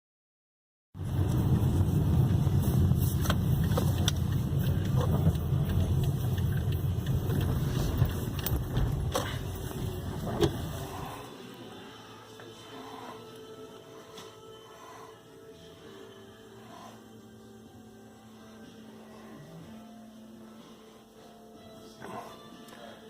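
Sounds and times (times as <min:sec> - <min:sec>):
car road rumble: 0:01.0 - 0:11.3.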